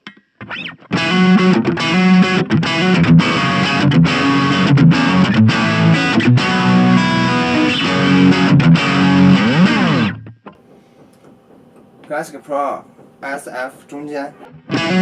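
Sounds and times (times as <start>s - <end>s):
distorted electric guitar: 0.0s - 10.6s, 14.4s - 15.0s.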